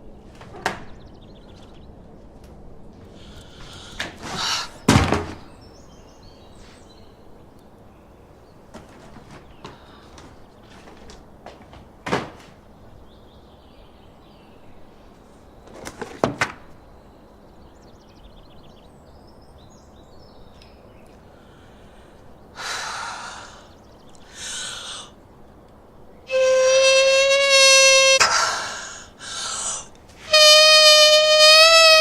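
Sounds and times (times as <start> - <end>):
short hissing rushes: 3.2 - 4.9, 22.6 - 25.2, 26.3 - 32.0
loud held horn-like note: 26.3 - 28.4, 30.3 - 32.0.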